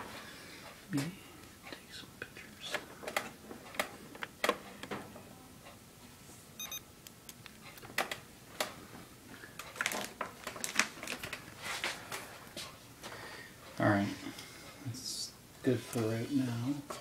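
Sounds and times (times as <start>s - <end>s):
high electronic beeps: 6.6s - 6.8s.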